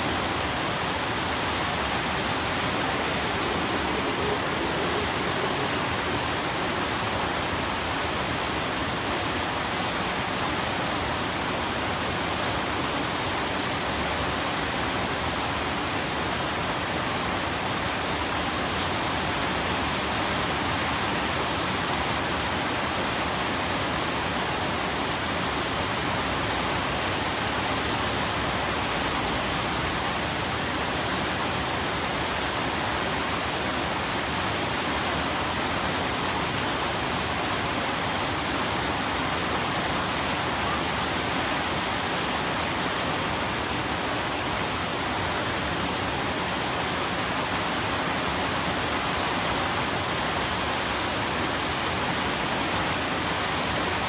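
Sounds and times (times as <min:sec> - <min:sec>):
heavy rain: 0:00.0 - 0:54.0.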